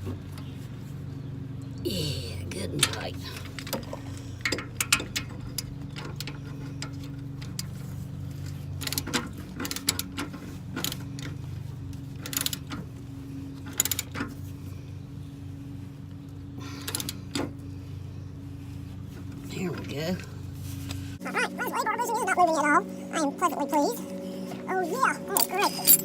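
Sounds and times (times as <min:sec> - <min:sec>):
low hum: 0:00.2 - 0:26.0
hand tools clicking on metal: 0:25.3 - 0:26.0.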